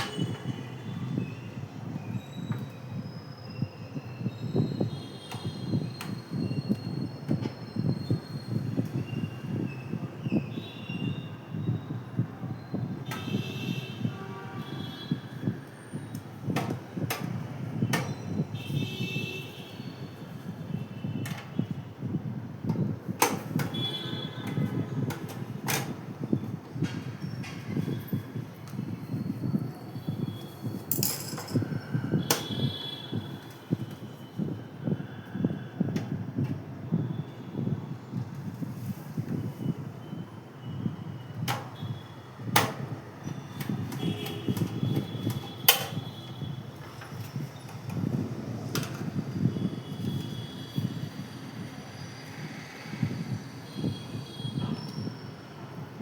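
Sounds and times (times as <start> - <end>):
sharp clicks and knocks: 43.6 - 46.1.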